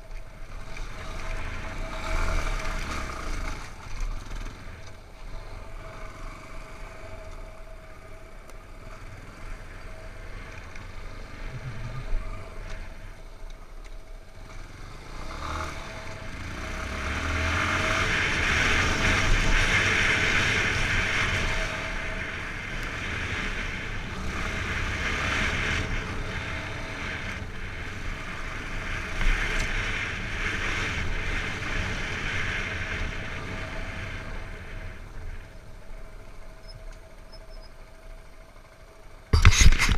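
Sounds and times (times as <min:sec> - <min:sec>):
motorcycle engine running: 0:00.0 - 0:39.9
road noise: 0:00.0 - 0:39.9
wind noise: 0:11.2 - 0:13.1.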